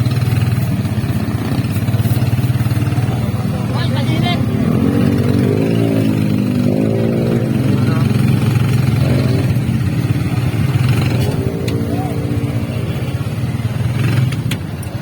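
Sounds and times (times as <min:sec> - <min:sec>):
vehicle engine droning: 0:00.0 - 0:15.0
people's voices: 0:01.0 - 0:15.0.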